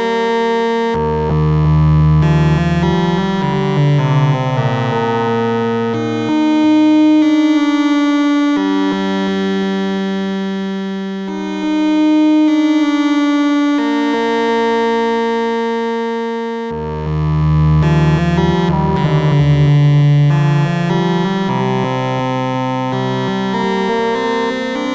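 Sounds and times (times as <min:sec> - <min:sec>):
analog synthesizer held notes: 0:00.9 - 0:06.8, 0:16.6 - 0:24.9.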